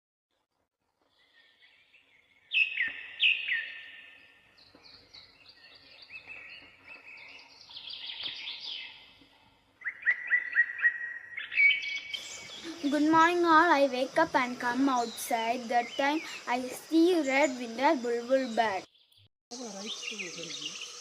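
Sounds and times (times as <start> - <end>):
bulbul calling: 9.8 - 18.9, 19.5 - 21.0.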